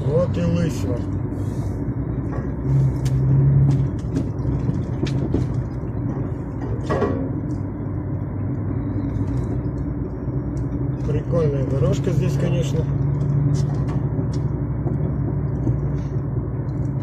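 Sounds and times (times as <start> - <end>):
truck diesel engine running: 0.0 - 17.0
knocks and rattles: 3.5 - 7.6.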